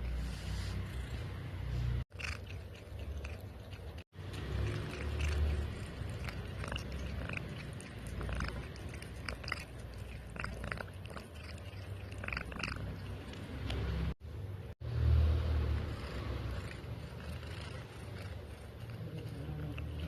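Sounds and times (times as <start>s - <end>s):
cat chewing food: 2.1s - 13.9s, 16.5s - 20.0s.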